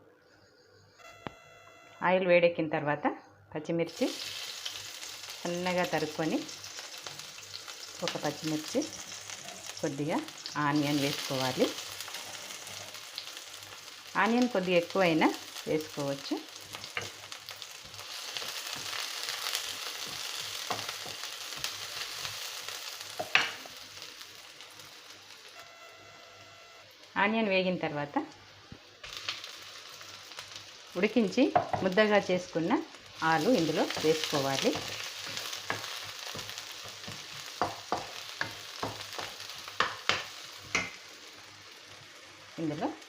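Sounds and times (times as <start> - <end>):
onion sizzling in hot oil: 3.9 - 43.0.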